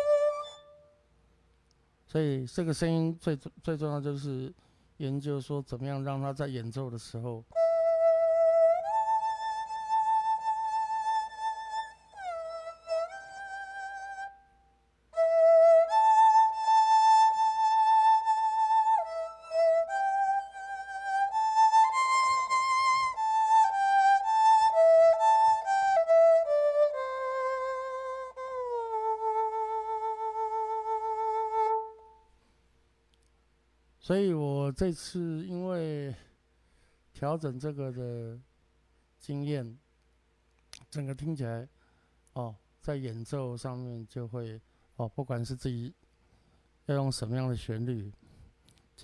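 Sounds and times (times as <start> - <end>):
erhu solo melody: 0.0 - 1.1, 7.5 - 32.3.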